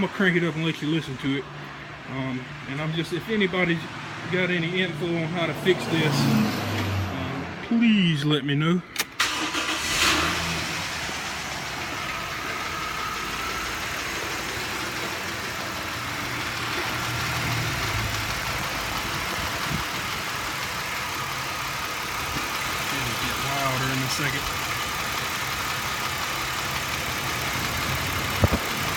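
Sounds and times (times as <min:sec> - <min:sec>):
engine idling: 0:09.0 - 0:28.9.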